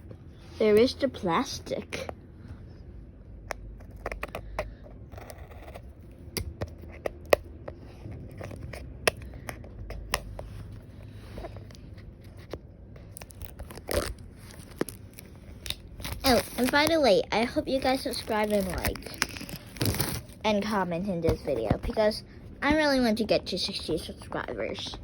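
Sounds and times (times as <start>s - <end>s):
plastic wrap crinkling and tearing: 13.1s - 20.6s.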